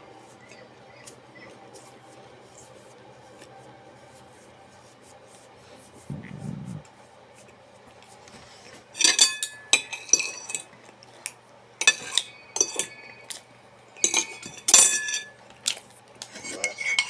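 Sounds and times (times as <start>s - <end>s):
utensils clinking on a dish: 8.9s - 10.7s, 11.8s - 13.4s, 14.0s - 15.4s, 16.2s - 17.0s.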